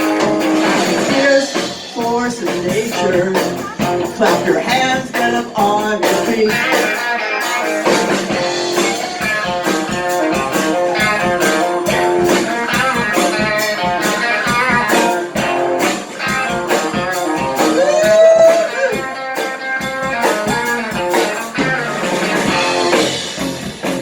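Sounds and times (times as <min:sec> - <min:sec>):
blues band playing: 0:00.0 - 0:24.0
lead guitar: 0:00.0 - 0:24.0.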